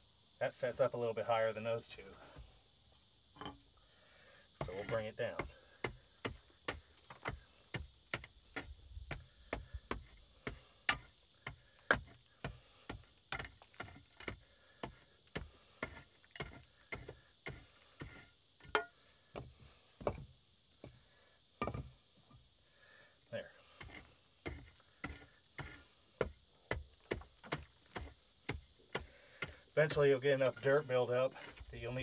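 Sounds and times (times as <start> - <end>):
sharp strikes on stone: 18.6 - 19.0, 21.6 - 21.9.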